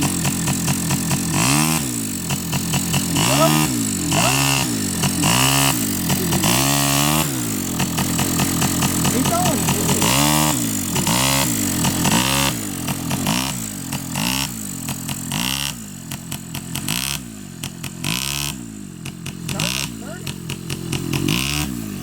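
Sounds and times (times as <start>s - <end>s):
atv engine revving: 0.0s - 22.0s.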